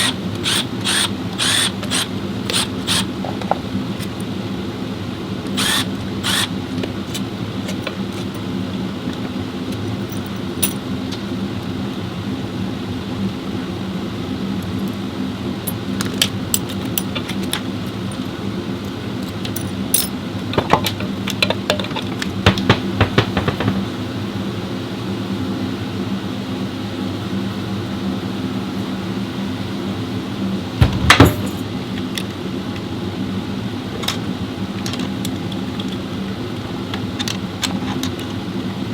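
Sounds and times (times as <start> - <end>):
low mechanical hum: 0.0 - 38.9
metal tools clinking: 10.0 - 10.9, 15.7 - 18.3, 19.2 - 21.0, 31.1 - 31.7.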